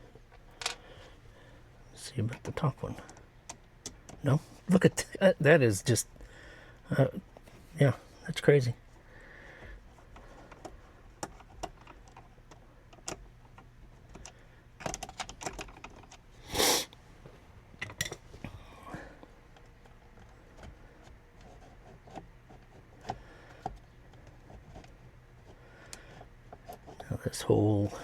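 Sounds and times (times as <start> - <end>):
clicks and taps of plastic parts: 2.3 - 4.3, 9.6 - 16.2, 19.2 - 27.1.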